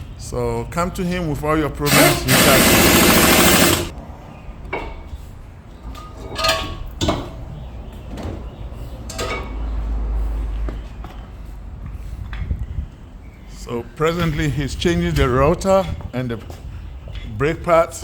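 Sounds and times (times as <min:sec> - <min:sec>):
loud harsh scraping: 0:01.9 - 0:03.9.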